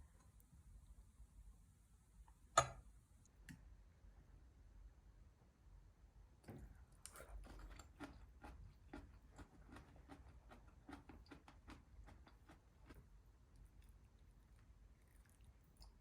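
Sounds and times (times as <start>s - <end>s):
person chewing food: 6.9s - 16.0s.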